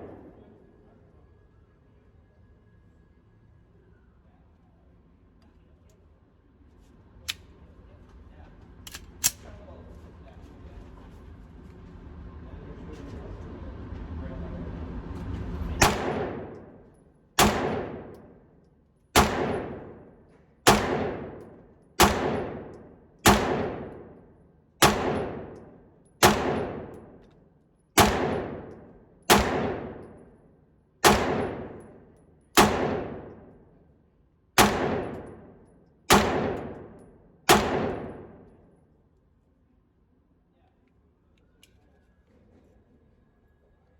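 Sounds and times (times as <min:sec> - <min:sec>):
pistol shots: 0:00.0 - 0:00.5, 0:15.8 - 0:16.8, 0:17.4 - 0:18.5, 0:19.2 - 0:27.3, 0:28.0 - 0:30.3, 0:31.0 - 0:33.6, 0:34.6 - 0:38.5.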